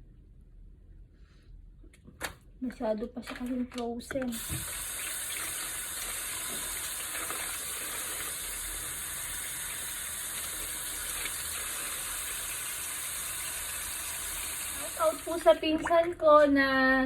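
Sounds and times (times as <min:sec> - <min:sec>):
tap running into sink: 0:04.1 - 0:08.6.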